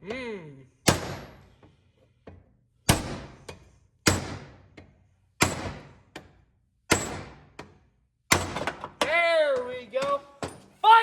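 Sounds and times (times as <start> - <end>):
hammer striking metal: 6.9 - 8.7.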